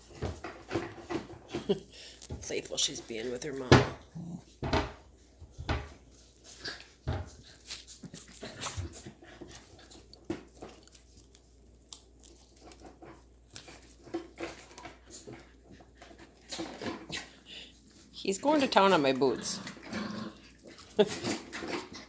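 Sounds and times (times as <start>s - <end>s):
puppies scuffling and clicking: 0.0s - 22.0s
puppy noises: 3.9s - 4.6s, 6.2s - 11.4s, 18.6s - 22.0s.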